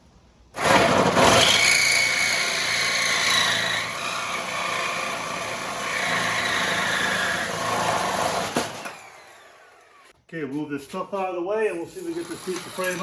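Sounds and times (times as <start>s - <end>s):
reciprocating saw cutting steel: 0.6s - 10.2s.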